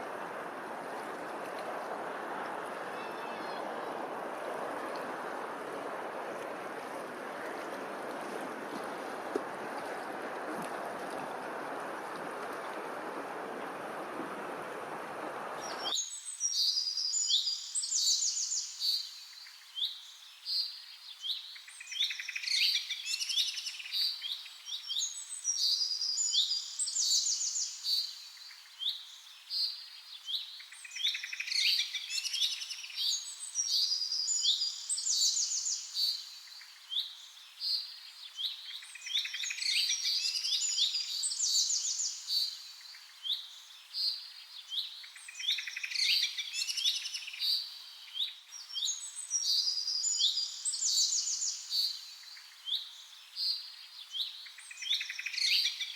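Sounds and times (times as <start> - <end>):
steady rushing noise: 0.0 - 15.9
many birds chirping: 1.5 - 9.0, 15.4 - 16.0.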